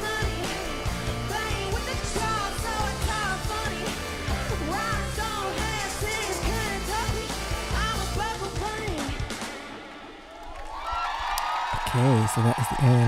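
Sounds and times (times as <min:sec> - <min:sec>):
woman singing: 0:00.0 - 0:09.5
country-pop band playing: 0:00.0 - 0:09.8.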